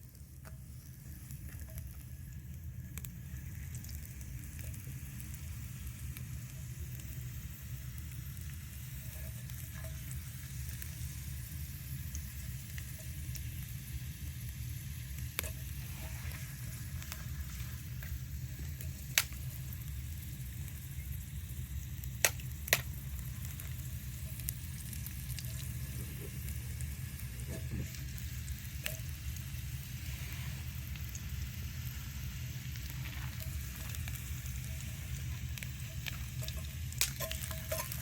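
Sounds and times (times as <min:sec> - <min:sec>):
bonfire burning with hiss: 0:00.0 - 0:38.0
fire crackling pops: 0:00.0 - 0:38.0.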